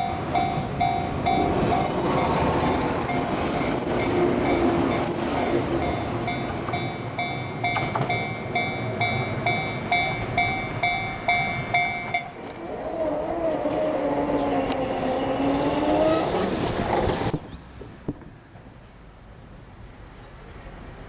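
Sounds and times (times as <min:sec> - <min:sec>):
level-crossing warning bell: 0:00.0 - 0:13.4
train running past: 0:00.0 - 0:17.3.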